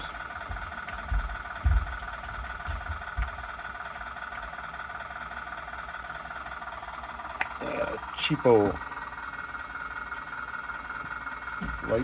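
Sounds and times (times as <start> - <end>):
dull low thumps: 0.0 - 3.5
simulated diesel engine idling: 0.0 - 12.0.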